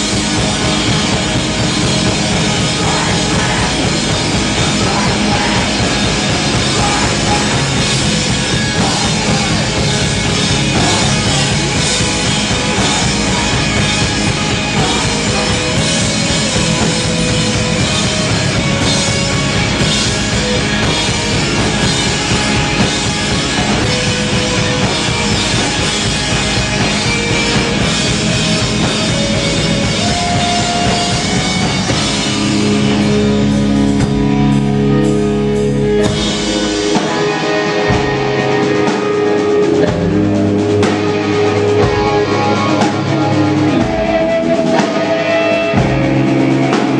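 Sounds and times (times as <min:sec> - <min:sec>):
punk band playing live: 0:00.0 - 0:46.9.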